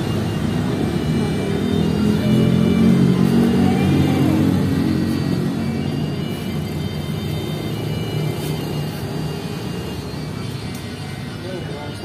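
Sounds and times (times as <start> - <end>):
bus engine passing: 0.0 - 12.0
faint high steady tones: 0.0 - 12.0.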